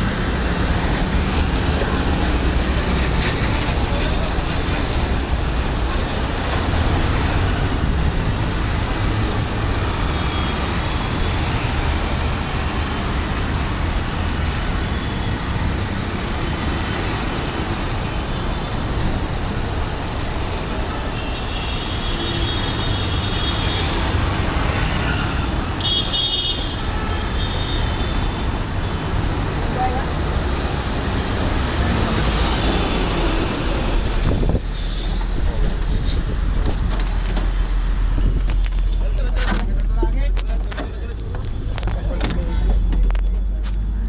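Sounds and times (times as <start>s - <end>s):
bus engine and road rumble: 0.0s - 44.0s
vehicle horns tooting: 25.7s - 28.6s.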